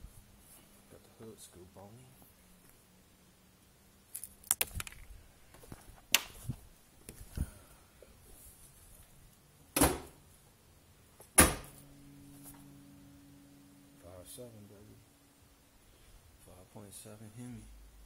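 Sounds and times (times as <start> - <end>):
faint low hum: 0.0 - 18.0
car hood slamming: 11.4 - 11.8.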